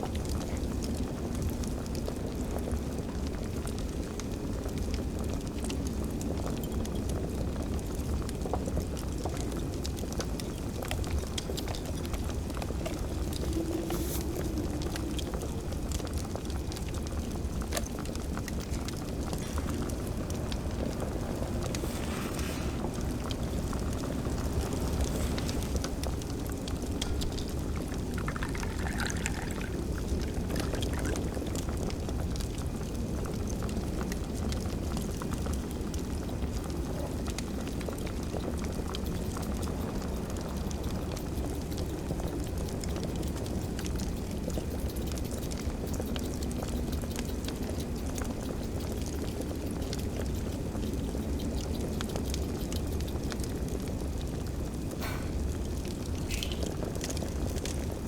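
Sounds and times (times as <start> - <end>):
low constant rumble: 0.0 - 58.0
wood fire crackling: 0.0 - 58.0.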